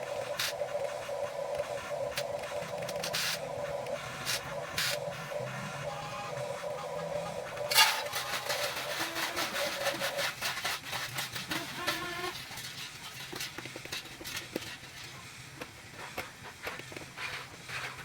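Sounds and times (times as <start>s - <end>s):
small electric motors whirring: 0.0s - 12.6s
low steady hum: 0.0s - 13.4s.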